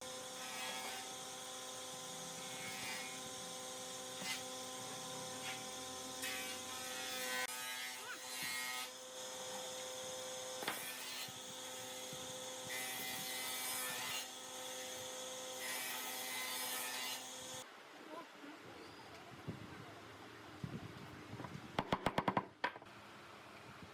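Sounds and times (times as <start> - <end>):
power tool motor whine: 0.0 - 7.6, 8.4 - 17.6.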